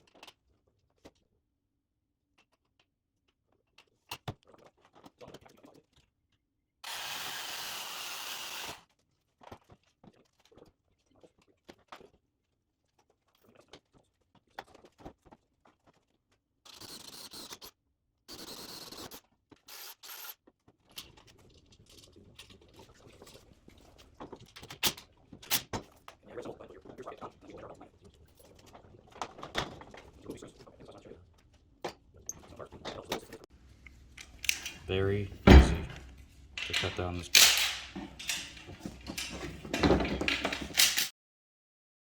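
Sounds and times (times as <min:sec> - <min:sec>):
power tool bursts: 0:06.8 - 0:08.8
clicks and scrapes on metal rail: 0:35.9 - 0:41.1.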